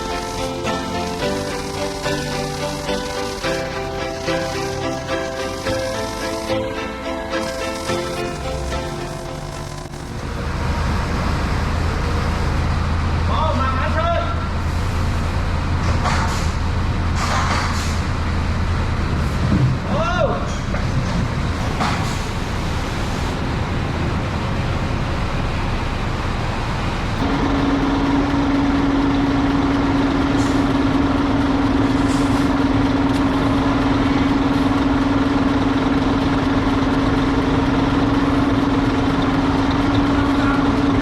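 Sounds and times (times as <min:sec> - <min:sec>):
steady motor hum: 0:00.0 - 0:14.5
machinery low rumble: 0:00.0 - 0:15.9, 0:18.2 - 0:41.0.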